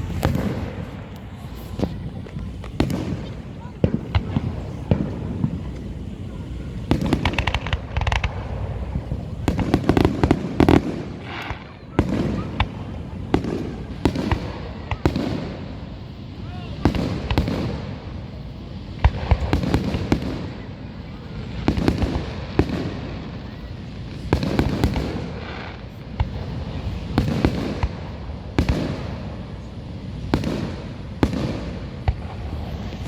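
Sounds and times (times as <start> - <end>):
rumbling echo: 0.0 - 15.9
fireworks banging and crackling: 0.0 - 33.0.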